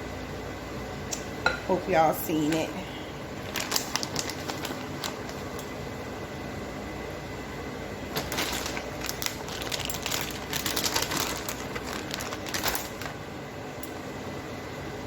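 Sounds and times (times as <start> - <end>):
steady background hum: 0.0 - 15.0
packaging crinkling: 3.3 - 5.8, 8.0 - 13.3.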